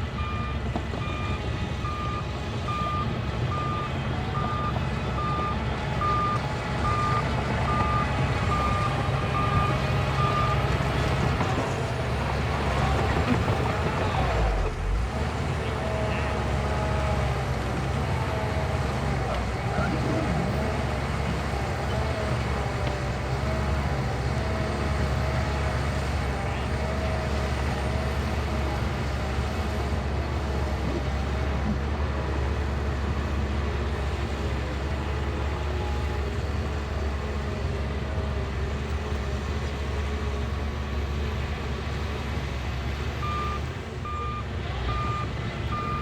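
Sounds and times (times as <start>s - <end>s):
bulldozer diesel engine running: 0.0s - 46.0s
reverse alarm beeping: 0.2s - 10.6s.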